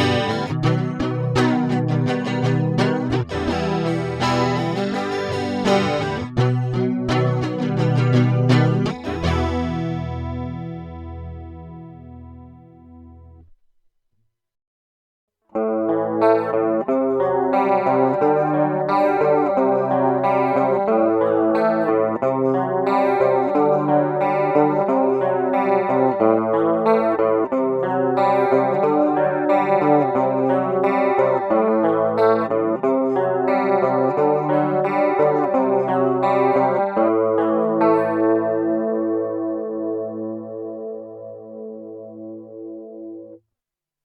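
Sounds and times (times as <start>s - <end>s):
electric guitar with chorus effect: 0.0s - 13.6s, 15.6s - 43.4s.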